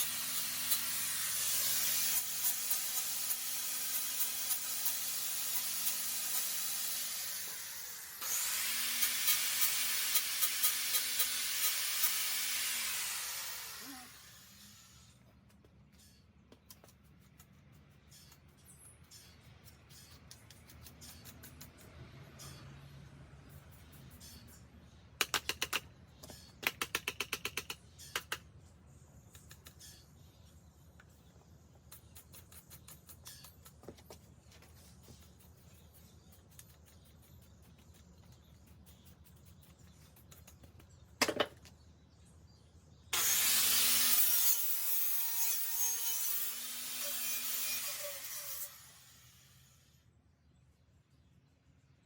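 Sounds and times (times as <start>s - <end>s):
sharp crackles of welding electrode: 0.0s - 15.2s.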